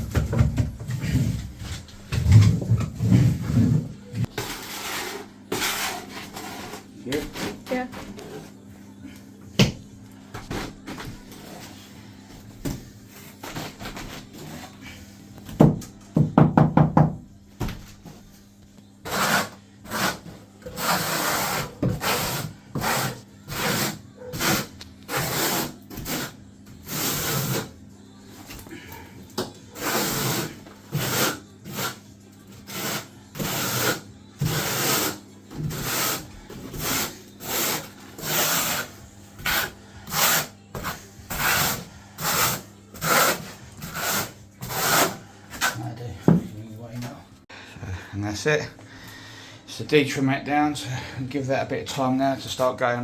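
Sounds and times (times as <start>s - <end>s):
scraping strokes on floor: 32.6s - 45.8s.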